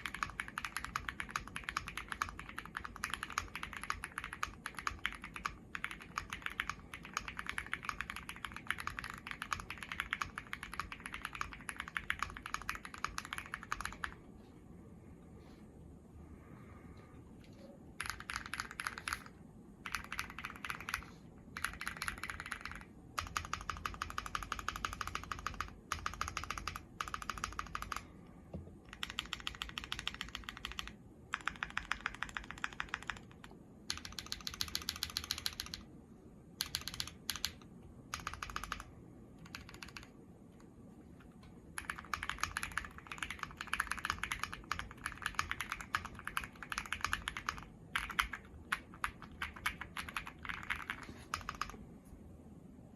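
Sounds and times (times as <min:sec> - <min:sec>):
fast typing on mechanical keyboard: 0:00.0 - 0:14.2, 0:18.0 - 0:28.1, 0:28.9 - 0:35.9, 0:36.6 - 0:40.2, 0:41.7 - 0:51.8.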